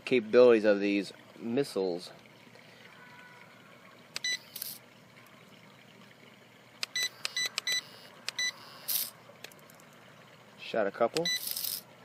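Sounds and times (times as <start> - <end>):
short high electronic beeps: 7.0 - 9.1, 11.2 - 11.8.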